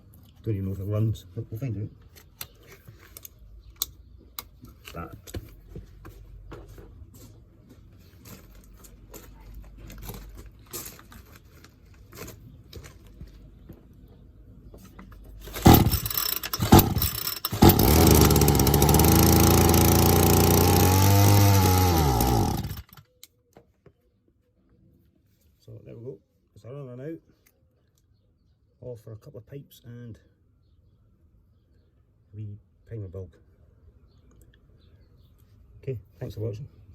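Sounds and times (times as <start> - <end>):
engine coughing: 15.6 - 22.9
strimmer engine running: 15.6 - 23.0.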